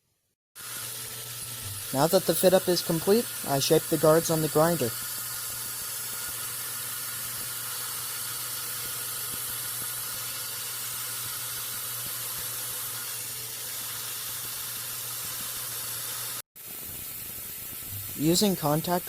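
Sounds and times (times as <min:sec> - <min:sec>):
belt grinder grinding steel: 0:00.6 - 0:16.4
low motor hum: 0:01.3 - 0:02.1, 0:17.7 - 0:18.2.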